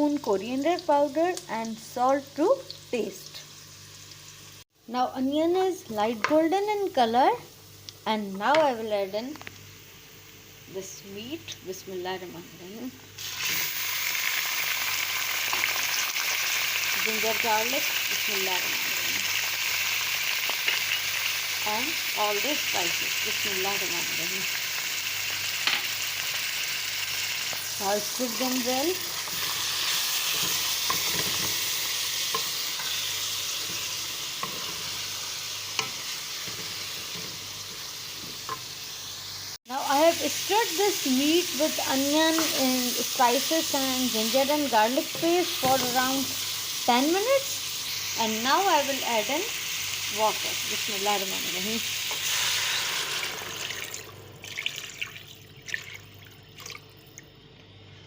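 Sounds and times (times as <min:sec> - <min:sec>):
meat sizzling in a pan: 0:00.0 - 0:04.7, 0:13.1 - 0:56.5
pops and crackles of frying: 0:09.3 - 0:09.7, 0:13.2 - 0:22.6, 0:23.7 - 0:39.5.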